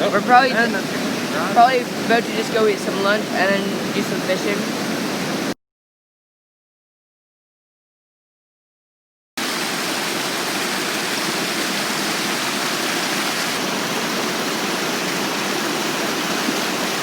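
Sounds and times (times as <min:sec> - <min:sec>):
river rapids rushing: 0:00.0 - 0:05.6, 0:09.4 - 0:17.0.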